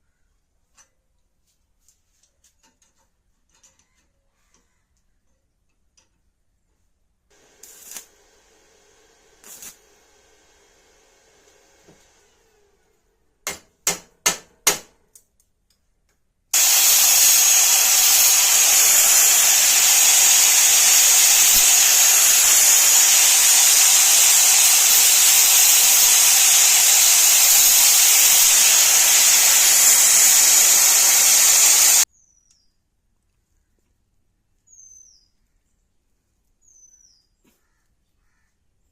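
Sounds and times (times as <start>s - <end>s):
power tool running: 7.3s - 13.0s, 16.6s - 32.1s.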